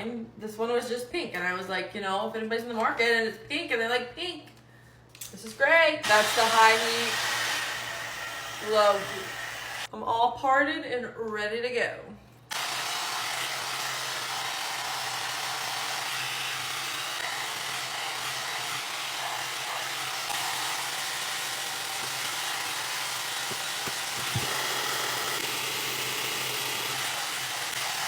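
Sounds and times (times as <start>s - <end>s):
hair dryer running: 6.0s - 9.9s, 12.5s - 28.0s.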